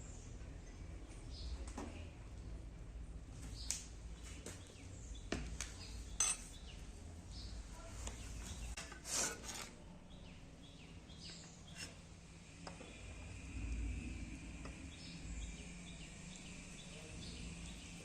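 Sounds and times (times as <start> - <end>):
birds chirping faintly: 3.4 - 18.0
metal utensils clinking: 6.2 - 6.6.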